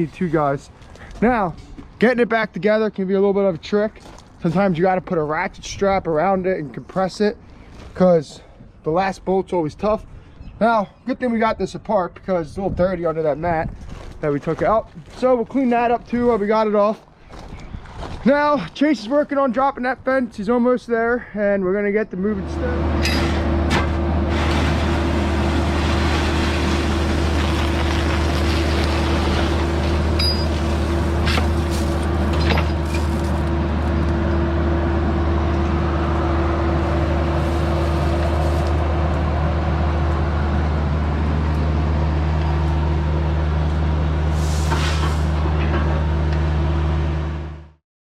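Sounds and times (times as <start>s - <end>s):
diesel engine running: 22.4s - 47.8s.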